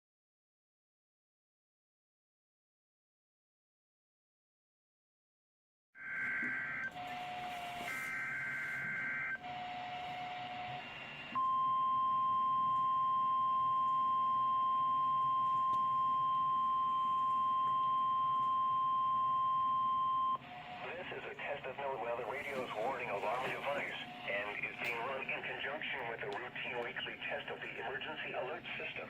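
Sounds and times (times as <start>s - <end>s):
weather radio alarm tone: 6.0s - 29.0s.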